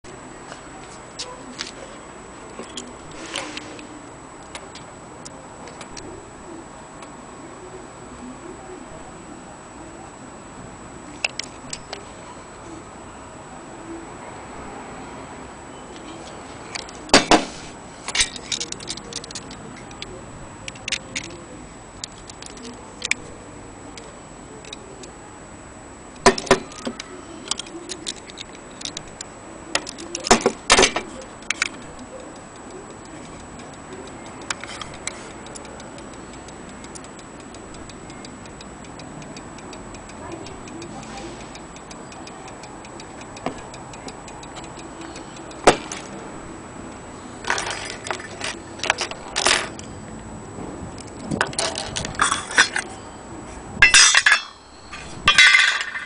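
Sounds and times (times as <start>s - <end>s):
metallic clicks and clatter: 18.1s - 20.1s, 22.0s - 23.3s, 26.2s - 32.0s, 47.4s - 49.9s, 51.0s - 52.9s, 53.8s - 56.0s.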